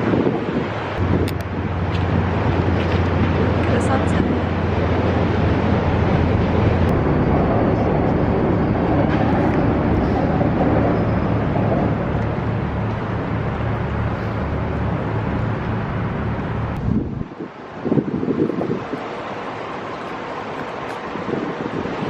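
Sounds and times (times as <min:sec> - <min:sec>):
low engine rumble: 0:00.8 - 0:17.5.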